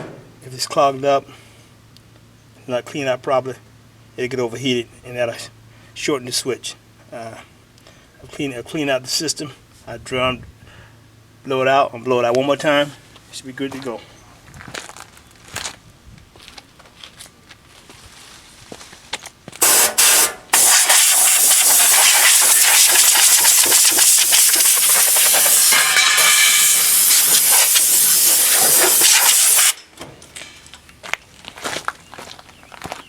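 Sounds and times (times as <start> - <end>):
compressed air blasts hissing: 19.6 - 29.8.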